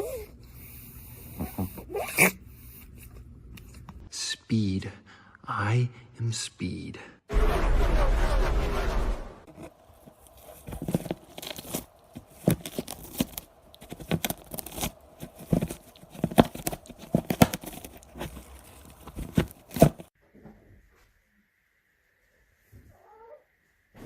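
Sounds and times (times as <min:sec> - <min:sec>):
crinkling and tearing: 0:09.5 - 0:20.2.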